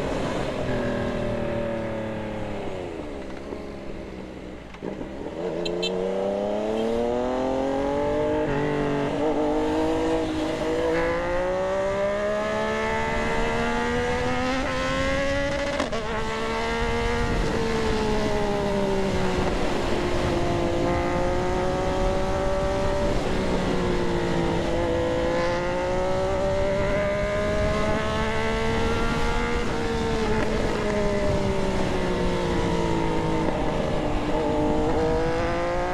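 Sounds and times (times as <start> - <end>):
motorcycle engine accelerating: 0.0 - 35.9.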